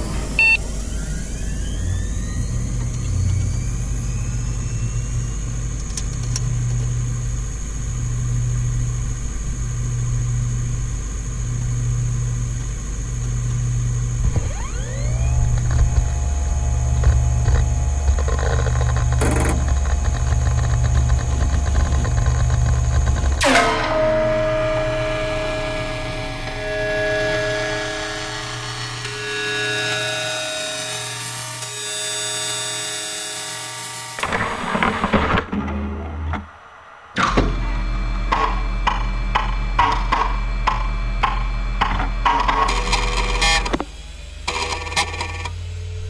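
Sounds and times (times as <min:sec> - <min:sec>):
low pulsing hum: 0:00.0 - 0:32.1, 0:34.0 - 0:46.0
drives spinning up whine: 0:00.0 - 0:46.0
short computer beep: 0:00.4 - 0:00.6
drive access clicks: 0:14.4 - 0:23.4.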